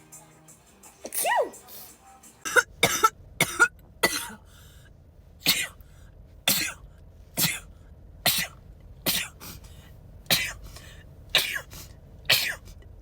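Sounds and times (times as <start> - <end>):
person sneezing: 11.4 - 12.8.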